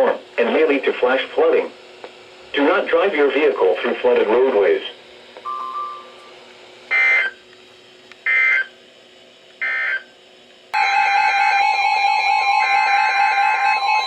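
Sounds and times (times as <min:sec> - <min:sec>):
two-tone attention signal: 0:05.5 - 0:06.3
screeching digital data bursts: 0:06.9 - 0:07.4, 0:08.2 - 0:08.7, 0:09.6 - 0:10.1.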